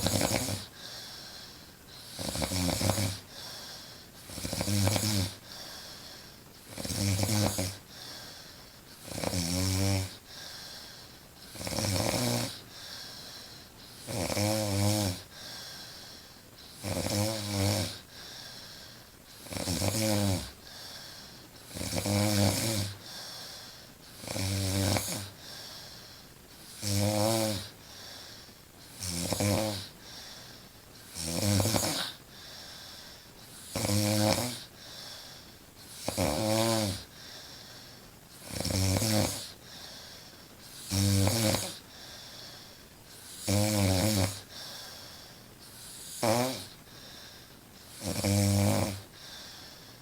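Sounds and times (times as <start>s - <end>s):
woman snoring: 0.0s - 1.3s, 2.0s - 5.6s, 6.6s - 7.8s, 9.0s - 10.3s, 11.5s - 12.6s, 14.0s - 16.0s, 16.7s - 18.1s, 19.3s - 20.8s, 21.7s - 23.6s, 24.2s - 25.5s, 26.7s - 27.8s, 28.9s - 29.9s, 31.1s - 32.2s, 33.6s - 34.7s, 35.9s - 37.1s, 38.4s - 39.6s, 40.7s - 41.8s, 43.2s - 45.0s, 45.7s - 46.8s, 47.9s - 49.6s
quiet breathing: 0.0s - 9.1s, 10.0s - 11.8s, 12.4s - 26.8s, 27.6s - 29.0s, 29.8s - 50.0s.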